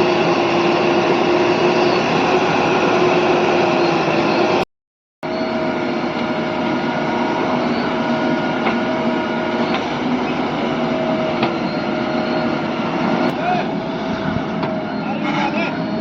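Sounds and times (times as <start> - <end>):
diesel machinery running: 0.0 - 4.6, 5.2 - 16.0.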